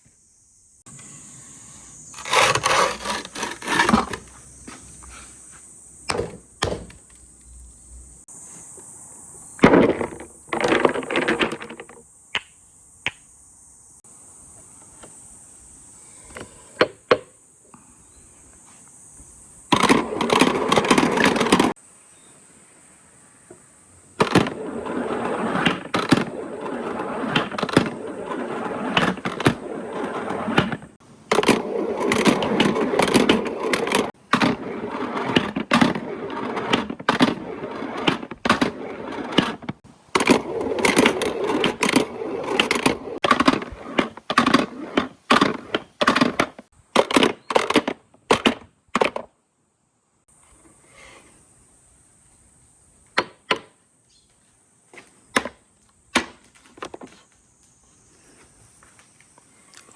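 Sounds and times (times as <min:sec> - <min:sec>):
marbles rolling on track: 0:02.2 - 0:04.2, 0:09.6 - 0:12.0.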